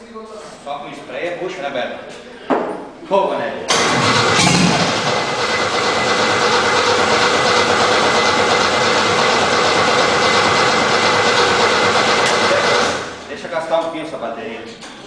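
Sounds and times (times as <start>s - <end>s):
car engine running with whine: 3.8s - 13.2s.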